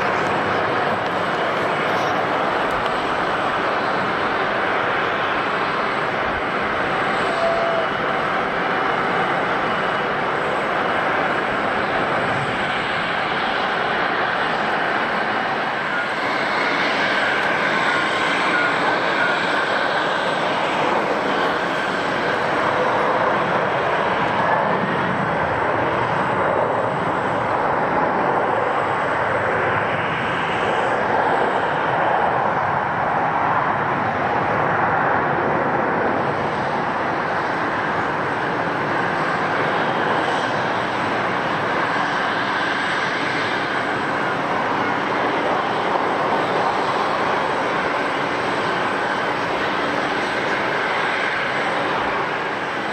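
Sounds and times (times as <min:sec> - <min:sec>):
jet airliner engines running: 0:00.0 - 0:52.9.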